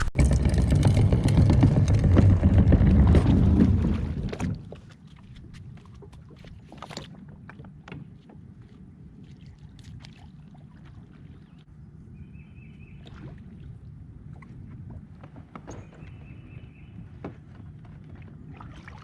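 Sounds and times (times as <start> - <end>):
wind rumble on microphone: 0.0 - 4.7, 7.1 - 19.0
gear knocking on plastic kayak: 0.1 - 4.9.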